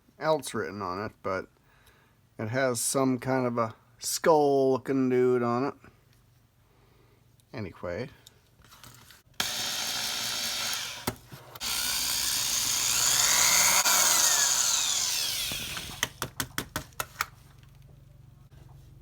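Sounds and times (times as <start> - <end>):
power drill whining: 9.4 - 16.2.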